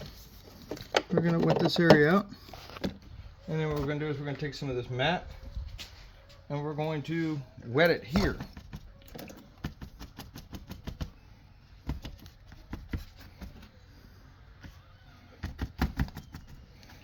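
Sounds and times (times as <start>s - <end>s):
tools clicking and knocking: 0.7s - 2.2s.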